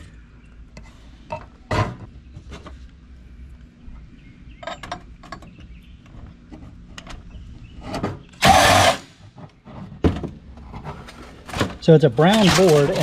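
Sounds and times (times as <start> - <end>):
loud rasping burst: 8.4 - 9.2.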